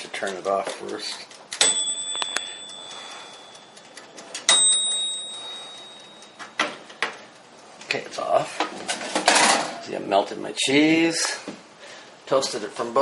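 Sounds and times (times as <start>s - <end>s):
timer knob turning: 0.2s - 8.0s
timer bell dinging: 1.5s - 7.6s.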